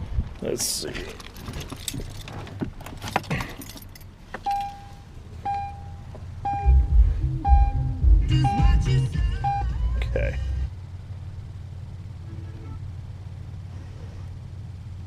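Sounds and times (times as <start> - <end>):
keys jangling in ignition: 0.9 - 6.1
car warning chime dinging: 4.4 - 10.0
car radio music with heavy beat: 5.5 - 10.7.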